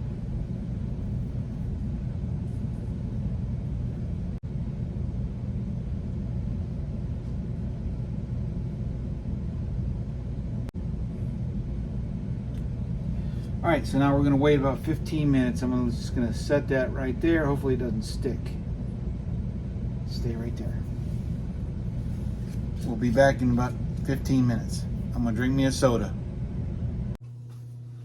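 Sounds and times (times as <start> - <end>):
air conditioning unit rumble: 0.0 - 28.0
faint steady hum tones: 0.0 - 28.0.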